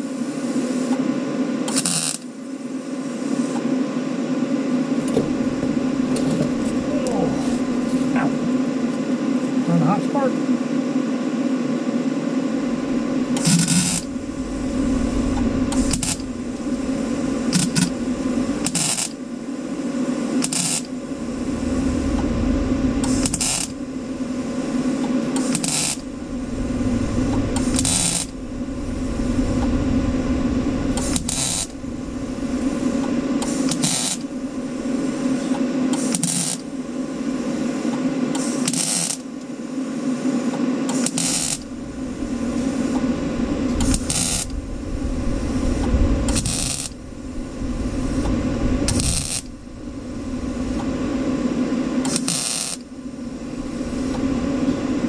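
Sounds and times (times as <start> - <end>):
steady welder hum: 11.2 - 40.2, 40.9 - 55.0
welding crackles: 46.3 - 47.0, 48.9 - 49.6, 52.1 - 52.9.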